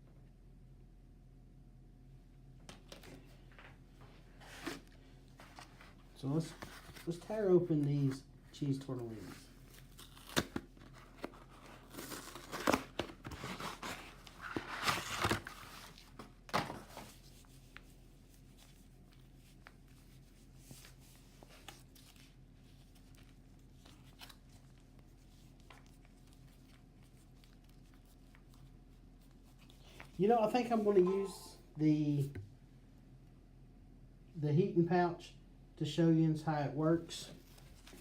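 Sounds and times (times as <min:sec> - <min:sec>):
faint steady hum: 0:00.0 - 0:38.0
pouch tearing and crinkling: 0:09.7 - 0:16.0.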